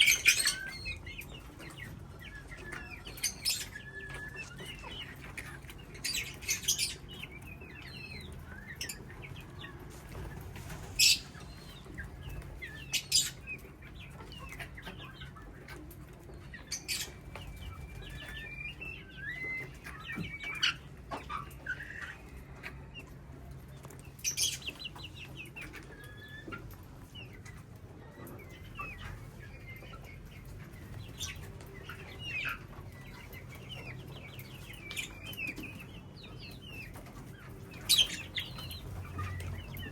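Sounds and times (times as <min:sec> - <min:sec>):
parrots chirping and squawking: 0:00.0 - 0:01.2, 0:02.7 - 0:07.1, 0:10.7 - 0:11.7, 0:12.8 - 0:13.4.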